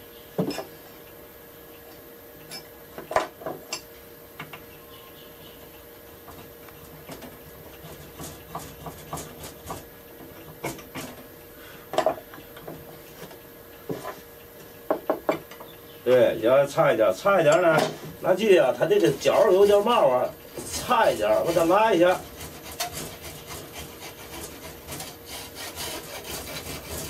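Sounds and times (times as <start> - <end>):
tools knocking on workbench: 0.4 - 0.7, 14.9 - 15.7.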